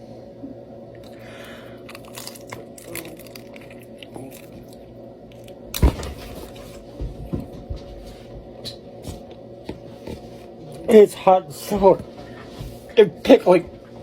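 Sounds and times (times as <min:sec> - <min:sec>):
person chewing crunchy food: 0:01.0 - 0:05.8.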